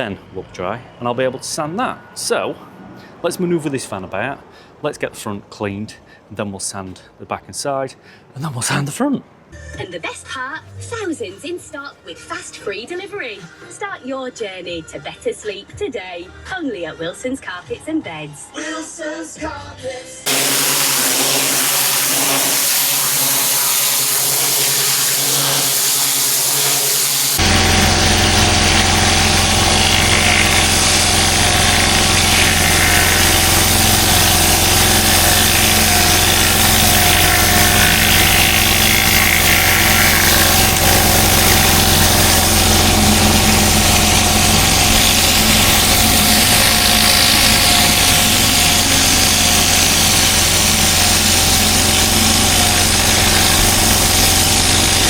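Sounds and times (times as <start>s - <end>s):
hissing rush: 20.3s - 55.0s
petrol engine running: 20.3s - 55.0s.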